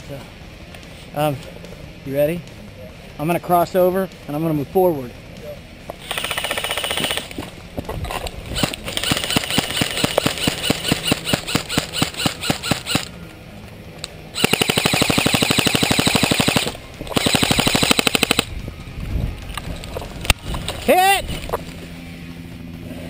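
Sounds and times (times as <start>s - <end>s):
airsoft guns firing: 6.0s - 7.4s, 8.6s - 13.1s, 14.4s - 18.5s.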